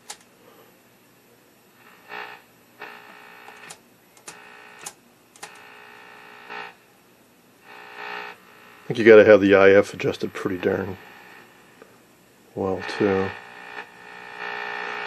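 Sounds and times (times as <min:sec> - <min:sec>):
sharp clicks: 0:00.0 - 0:00.3, 0:03.4 - 0:05.6
distorted buzz from speaker: 0:00.0 - 0:15.0.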